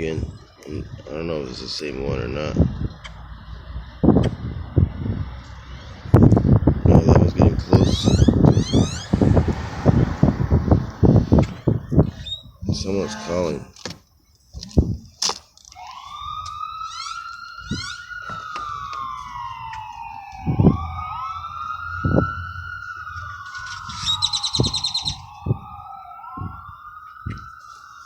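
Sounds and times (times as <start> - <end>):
emergency siren wailing: 2.6 - 13.8, 15.6 - 28.0
rapid high chirps: 7.8 - 9.5, 23.9 - 25.4.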